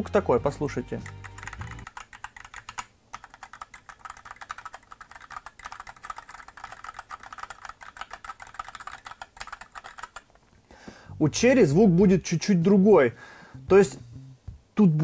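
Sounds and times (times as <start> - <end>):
fast typing on mechanical keyboard: 1.0 - 10.3.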